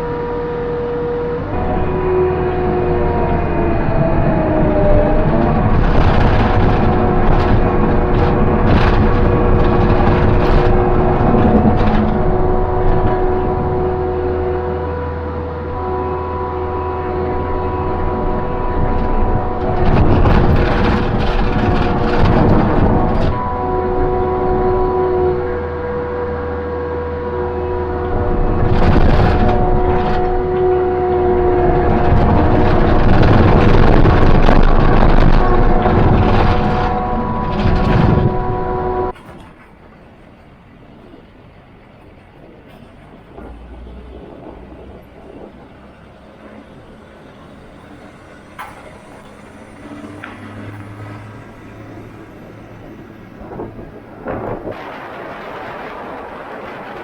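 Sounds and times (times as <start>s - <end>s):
vehicle motor whining: 0.0s - 41.4s, 42.5s - 57.0s
driving noise with rattles: 0.0s - 57.0s
loud rushing noise: 43.3s - 57.0s.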